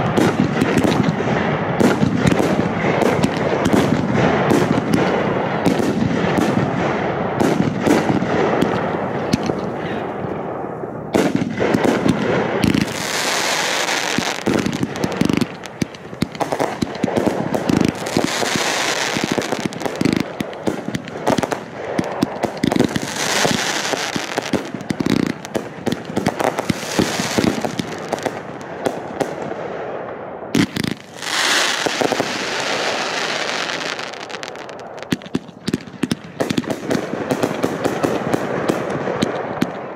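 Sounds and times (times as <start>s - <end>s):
fireworks crackling and popping: 0.0s - 39.9s
fireworks hissing: 30.6s - 35.3s.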